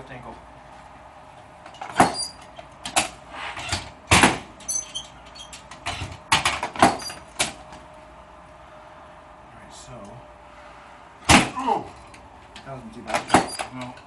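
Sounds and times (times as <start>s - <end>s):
treatment table knocks and clunks: 13.0s - 13.8s.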